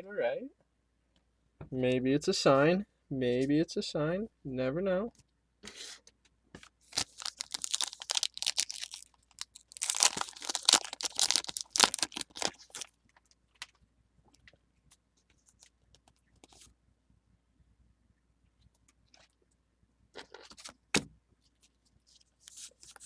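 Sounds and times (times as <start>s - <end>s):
foil wrapper tearing and crinkling: 6.8s - 12.9s.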